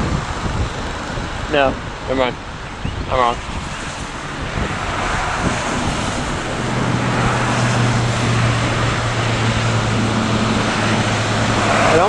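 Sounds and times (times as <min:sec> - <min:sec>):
storm wind rushing: 0:00.0 - 0:12.0
low engine-like hum: 0:05.4 - 0:12.0.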